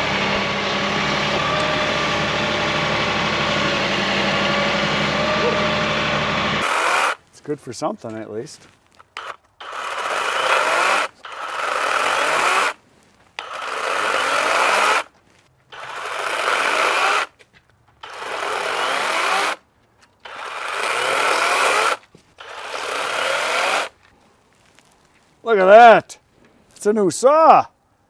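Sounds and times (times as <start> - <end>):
motor running in bursts: 0.0 - 7.2, 9.2 - 12.8, 13.4 - 15.1, 15.7 - 17.3, 18.0 - 19.6, 20.3 - 23.9.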